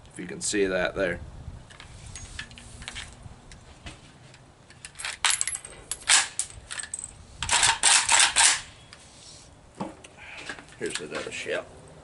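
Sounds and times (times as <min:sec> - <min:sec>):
rifle metallic clicks and clinks: 0:04.7 - 0:08.7.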